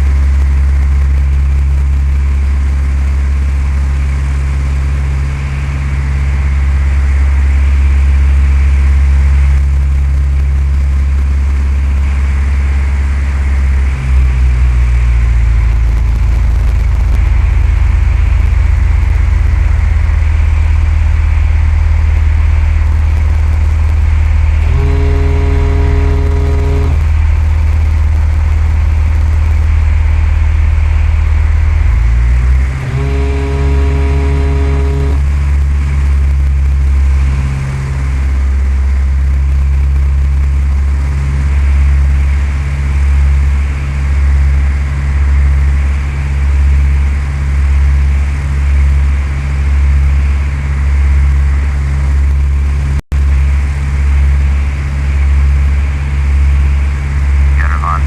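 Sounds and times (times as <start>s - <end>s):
propeller plane engine running: 0.0s - 58.0s
steady buzzing tone: 23.1s - 30.0s, 31.8s - 36.0s, 57.6s - 58.0s.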